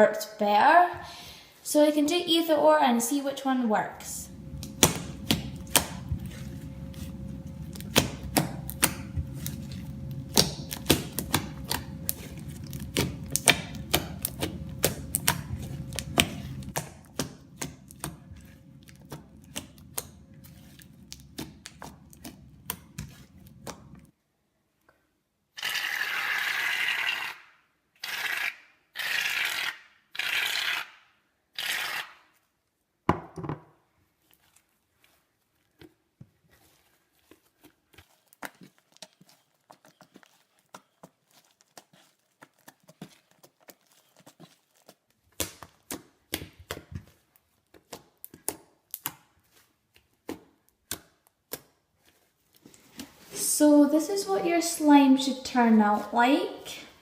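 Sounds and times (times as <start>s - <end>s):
low rumble: 4.0s - 16.8s
slime squeezed by hand: 36.6s - 51.0s.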